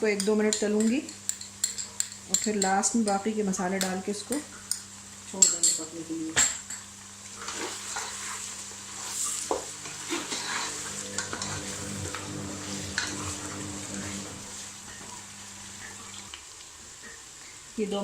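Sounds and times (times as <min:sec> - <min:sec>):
chicken sizzling in a pot: 0:00.0 - 0:18.0
spoon scraping a pot: 0:07.4 - 0:14.6
steady low hum: 0:08.7 - 0:16.0.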